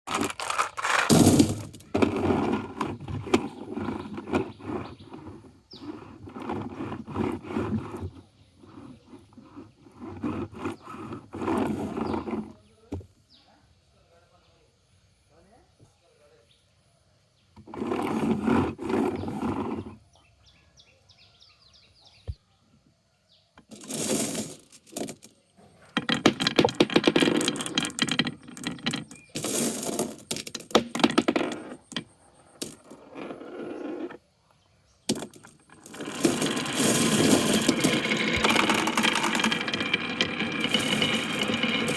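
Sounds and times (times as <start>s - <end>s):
marbles rattling down wooden track: 0.1s - 8.0s, 23.7s - 33.4s, 35.1s - 41.9s.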